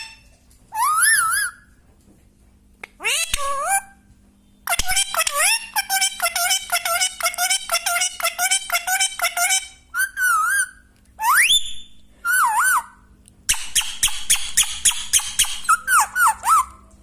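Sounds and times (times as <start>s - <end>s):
parrot calling: 0.0s - 1.6s, 3.0s - 4.0s, 4.6s - 11.6s, 12.2s - 16.9s
parrot whistling: 0.8s - 1.6s, 7.9s - 16.8s.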